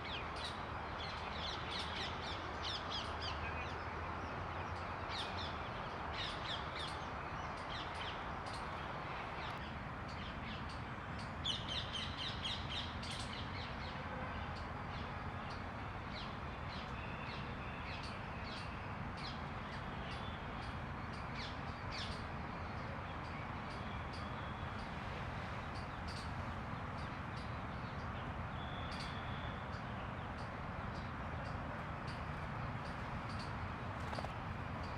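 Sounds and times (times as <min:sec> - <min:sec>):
birds chirping: 0:11.2 - 0:34.9.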